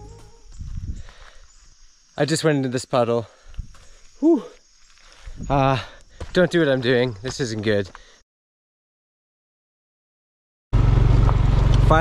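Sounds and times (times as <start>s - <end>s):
motor scooter engine running: 10.8s - 12.0s.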